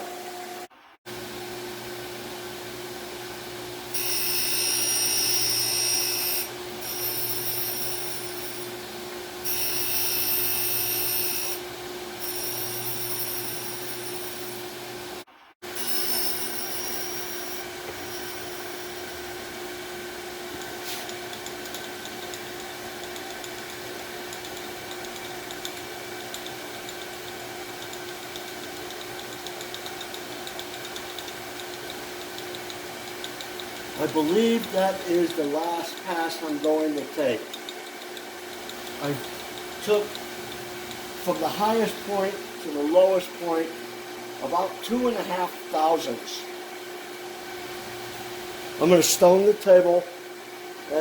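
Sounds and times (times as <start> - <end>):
grinder motor hum: 0.0 - 49.2
high-pitched grinding hiss: 3.9 - 8.8, 9.4 - 14.7, 15.6 - 19.5, 33.4 - 43.7.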